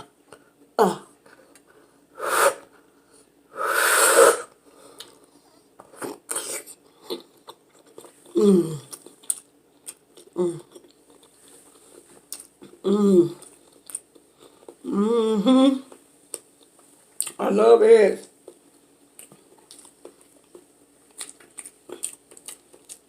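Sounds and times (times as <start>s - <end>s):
breathy blast of air: 2.2s - 2.7s, 3.5s - 4.5s
wet chewing and mouth clicks: 5.0s - 12.8s, 13.4s - 14.8s, 18.4s - 23.0s.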